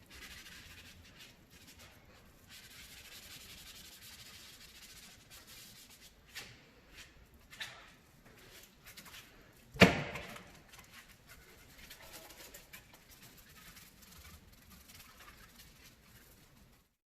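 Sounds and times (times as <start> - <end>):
faint rubbing and scraping: 0.0 - 9.7, 10.4 - 17.0
sharp knock: 9.8 - 10.3.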